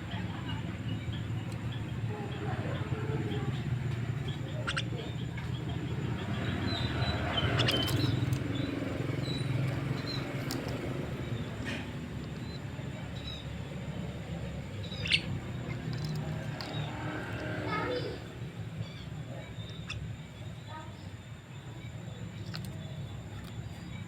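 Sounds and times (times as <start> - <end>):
low background rumble: 0.0 - 24.0
bird chirps and clicks: 0.9 - 2.0, 3.3 - 12.6, 14.8 - 17.5, 22.3 - 24.0.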